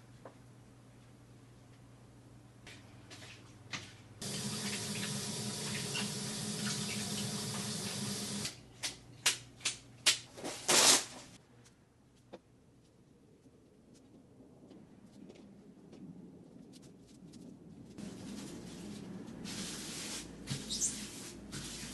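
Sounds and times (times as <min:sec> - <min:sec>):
kitchen tap running: 0:04.2 - 0:08.5.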